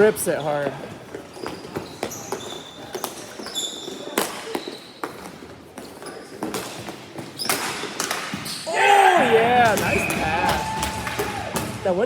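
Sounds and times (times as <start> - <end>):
sneakers squeaking on floor: 0.0 - 8.7, 9.4 - 11.0
hockey sticks and ball knocking: 9.5 - 12.0.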